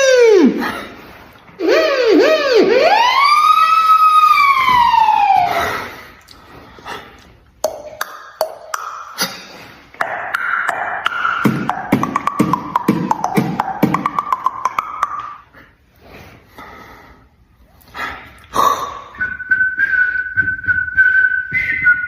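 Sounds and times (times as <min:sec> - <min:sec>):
siren-like wail: 0:01.6 - 0:05.8
beatbox sounds and clicks: 0:07.2 - 0:15.8, 0:17.8 - 0:22.0.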